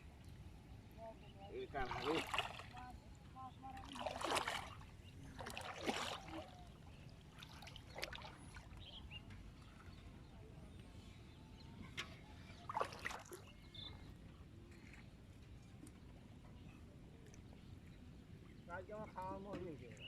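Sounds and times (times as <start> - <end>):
water splashing in marsh: 1.8 - 2.8, 3.8 - 6.7, 7.4 - 8.8, 12.7 - 13.5.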